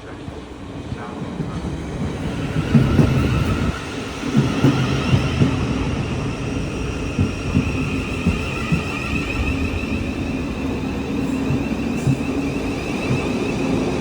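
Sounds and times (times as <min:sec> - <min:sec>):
train clunks: 0:00.0 - 0:14.0
train wheels rumbling on rail: 0:00.0 - 0:14.0.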